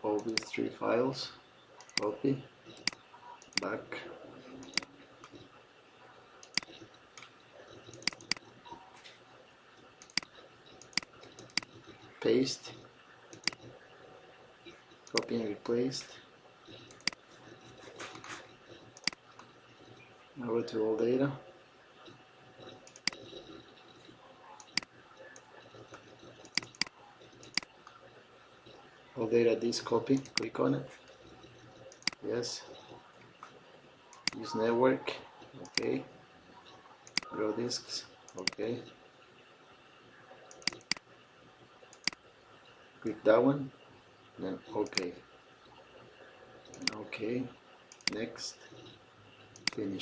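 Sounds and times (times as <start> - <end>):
computer mouse clicking: 0.2 - 0.6, 1.8 - 2.1, 4.6 - 5.5, 6.4 - 8.8, 10.0 - 11.8, 13.3 - 13.7, 15.0 - 15.4, 16.8 - 19.5, 22.6 - 23.4, 24.6 - 28.0, 30.1 - 32.3, 34.1 - 34.5, 37.0 - 37.4, 38.3 - 38.7, 40.5 - 41.1, 41.9 - 42.2, 46.7 - 47.1, 47.9 - 48.3, 49.6 - 49.9.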